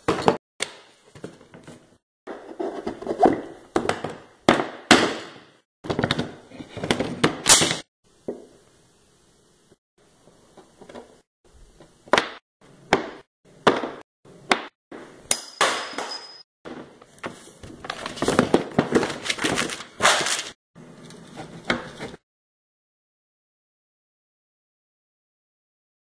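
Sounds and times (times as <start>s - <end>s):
workshop clatter: 12.1s - 22.2s
high ringing tone: 15.3s - 16.5s.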